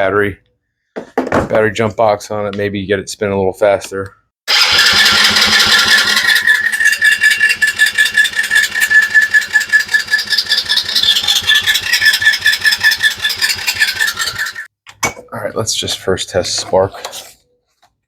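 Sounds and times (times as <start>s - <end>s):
engine starter cranking: 4.5s - 14.7s.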